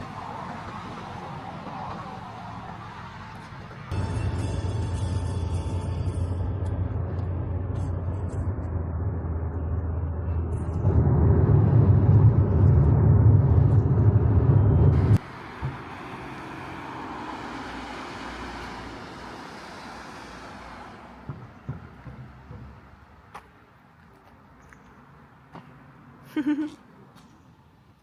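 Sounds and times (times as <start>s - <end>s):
vehicle low rumble: 0.0s - 28.0s
steady rushing hiss: 15.0s - 21.3s.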